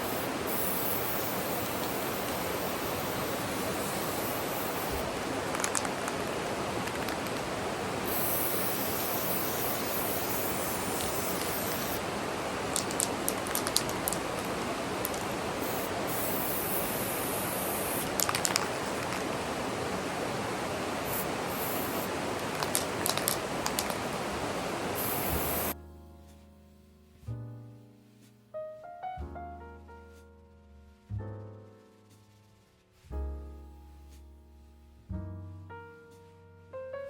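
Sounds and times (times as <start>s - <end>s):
stream rushing: 0.0s - 25.8s
piano music: 0.1s - 5.0s, 25.4s - 37.0s
sharp clicks: 5.5s - 7.5s, 12.7s - 15.3s, 18.0s - 19.3s, 22.4s - 24.0s.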